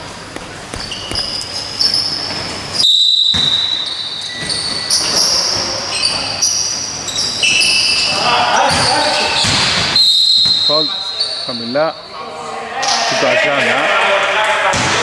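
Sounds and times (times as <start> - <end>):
basketball bouncing: 0.0 - 3.6
sneakers squeaking on floor: 0.0 - 11.6.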